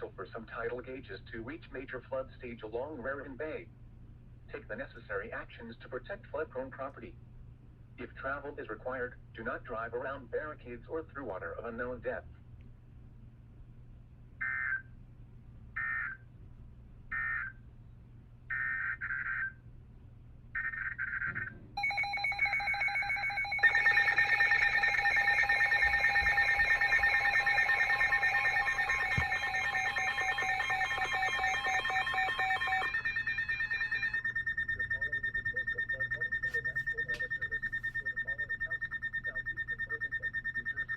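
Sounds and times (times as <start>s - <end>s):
pulsing multi-tone alarm: 17.1s - 17.5s, 20.6s - 40.9s
steady alarm tone: 20.6s - 40.9s
screechy digital beeps: 21.8s - 40.9s.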